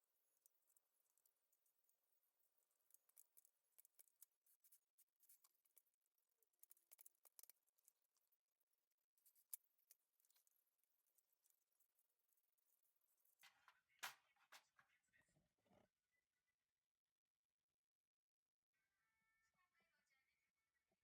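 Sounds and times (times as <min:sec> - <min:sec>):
faint light clicks and ticks: 0:00.0 - 0:14.2.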